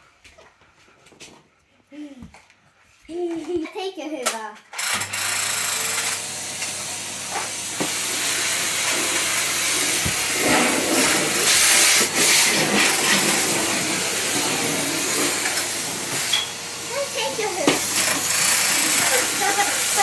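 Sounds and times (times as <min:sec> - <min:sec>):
vacuum cleaner running: 0:04.8 - 0:20.0.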